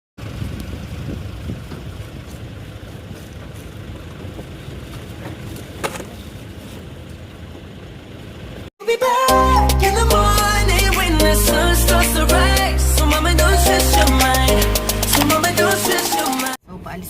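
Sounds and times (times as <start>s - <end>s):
motor vehicle running: 0.2s - 8.7s
sharp click: 15.0s - 15.5s.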